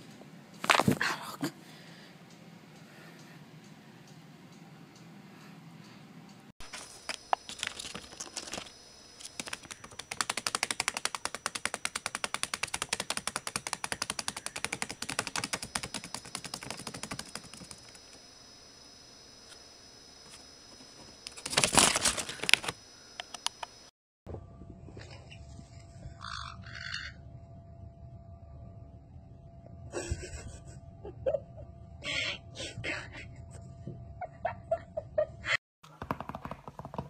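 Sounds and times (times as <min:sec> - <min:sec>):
rapid sharp clicks: 0:07.1 - 0:18.3.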